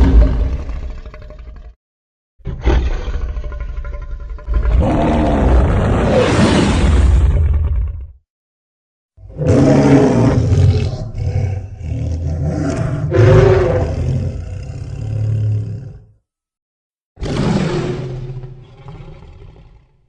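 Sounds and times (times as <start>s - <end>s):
deep monster roar: 2.5s - 8.2s, 9.2s - 16.2s, 17.2s - 20.0s.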